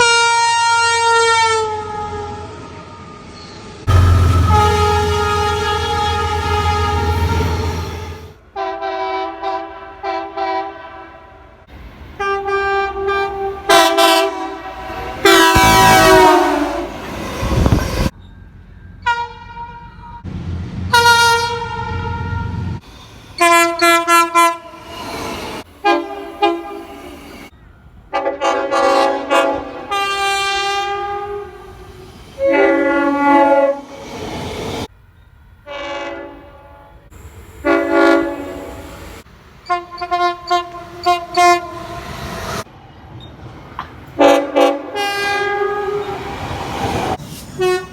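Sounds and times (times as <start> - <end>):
locomotive air horn blasts: 0.0 - 2.6, 3.9 - 11.6, 12.2 - 18.1, 20.9 - 22.7, 23.4 - 25.0, 25.8 - 27.2, 28.1 - 31.8, 32.4 - 34.2, 35.7 - 42.6, 44.2 - 46.4, 47.6 - 47.9
low rumble: 3.9 - 8.4.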